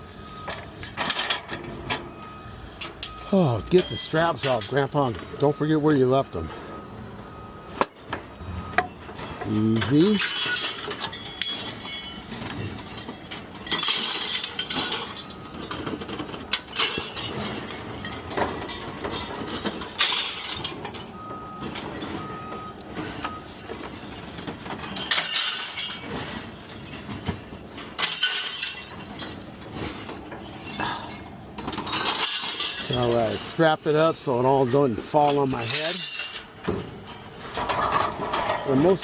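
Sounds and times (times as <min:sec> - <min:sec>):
scrap metal clanking onto pile: 0:00.0 - 0:06.8, 0:07.6 - 0:39.0
short beeps: 0:02.0 - 0:04.4.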